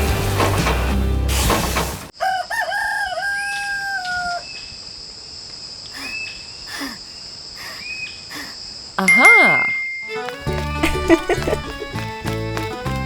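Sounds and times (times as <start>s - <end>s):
music: 0.0s - 1.7s, 10.0s - 13.0s
rooster crowing: 2.2s - 4.6s
steady high-pitched tone: 9.0s - 10.3s.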